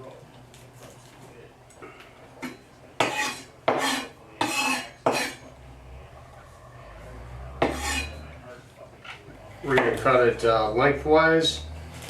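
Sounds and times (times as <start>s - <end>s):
knife scraping on cutting board: 3.0s - 5.5s, 7.6s - 8.3s.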